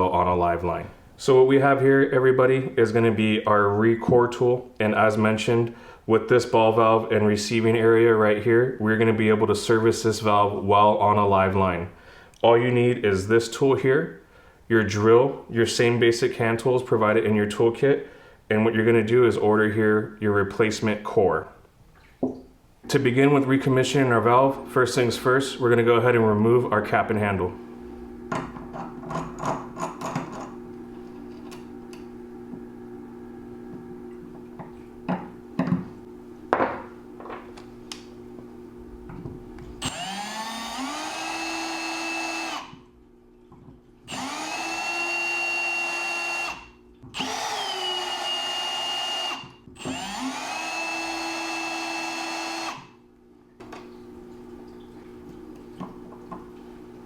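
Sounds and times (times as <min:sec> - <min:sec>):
power drill whining: 0:39.8 - 0:42.8, 0:44.1 - 0:52.9.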